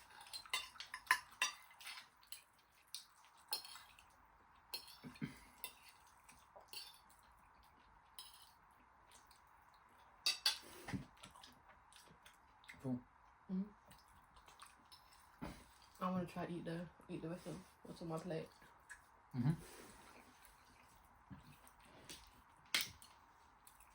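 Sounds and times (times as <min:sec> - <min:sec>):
cutlery clinking on plates: 0:00.0 - 0:02.5, 0:03.5 - 0:03.9, 0:04.8 - 0:06.0, 0:08.2 - 0:08.5, 0:10.3 - 0:11.0.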